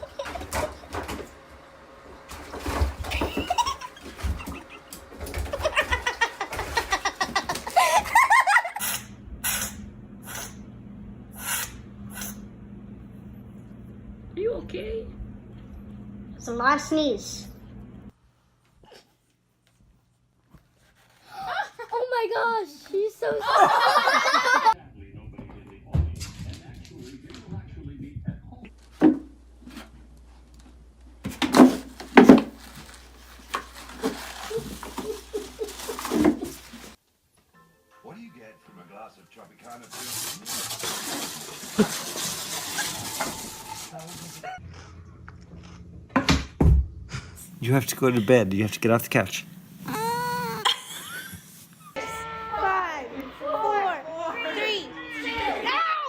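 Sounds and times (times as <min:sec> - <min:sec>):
people laughing: 0:00.0 - 0:00.6, 0:03.1 - 0:09.0, 0:23.2 - 0:24.8, 0:34.5 - 0:36.9, 0:50.2 - 0:52.2
short hissing bursts: 0:08.8 - 0:10.6, 0:11.4 - 0:12.4.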